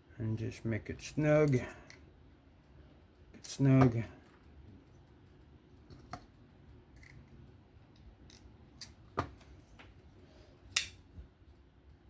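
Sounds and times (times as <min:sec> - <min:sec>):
folding knife sharp clicks: 0:10.8 - 0:11.0.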